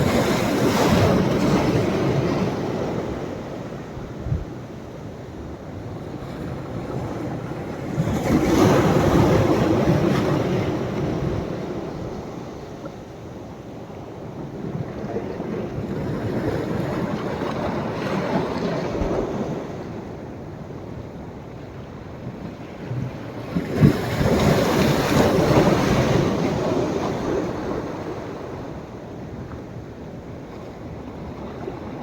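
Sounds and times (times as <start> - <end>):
sea waves breaking on beach: 0.0 - 4.9, 23.2 - 29.0.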